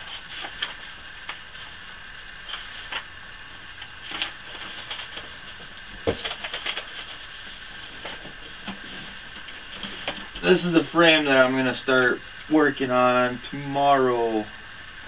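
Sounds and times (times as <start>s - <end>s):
paper pages rustling: 0.0s - 1.8s, 2.4s - 10.7s
steady background hum: 0.0s - 15.0s.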